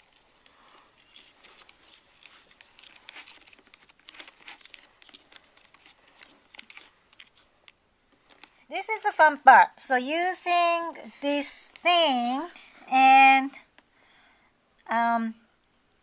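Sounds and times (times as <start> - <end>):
spoon scraping and clicking: 0.0 - 8.5.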